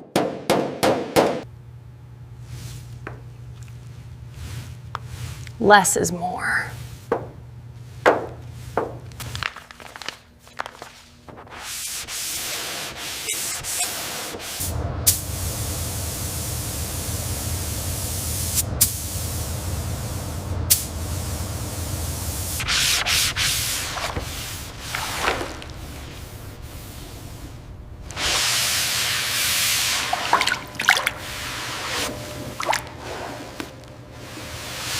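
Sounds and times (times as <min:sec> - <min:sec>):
hand sanding strokes: 0:11.5 - 0:14.7, 0:21.6 - 0:30.4.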